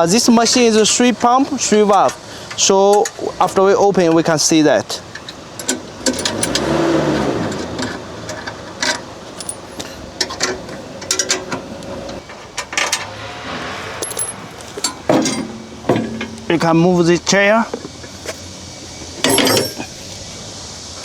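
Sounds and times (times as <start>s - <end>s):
latches clicking and knocking: 4.9s - 6.8s, 7.4s - 13.1s, 14.0s - 16.7s, 19.2s - 19.9s
engine revving: 5.5s - 21.0s.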